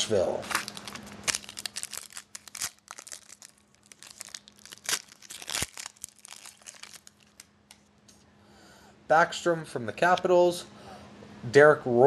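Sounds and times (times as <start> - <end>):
wrapper crinkling and tearing: 0.4 - 7.5.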